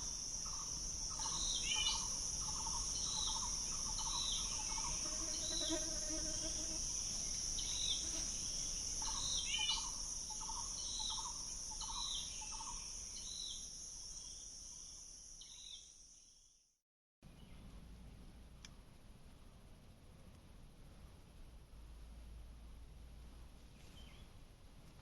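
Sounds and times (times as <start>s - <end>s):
insect chorus droning: 0.0s - 16.8s.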